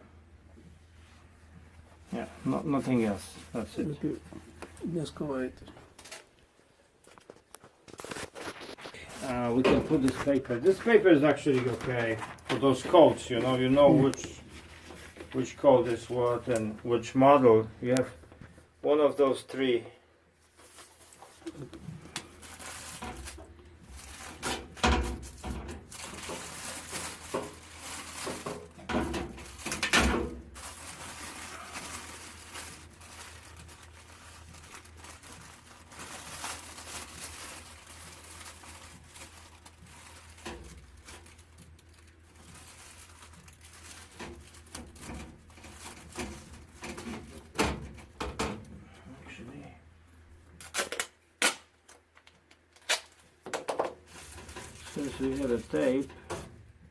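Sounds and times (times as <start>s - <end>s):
paper crinkling and rustling: 7.0s - 18.7s, 20.4s - 48.6s, 53.9s - 56.5s.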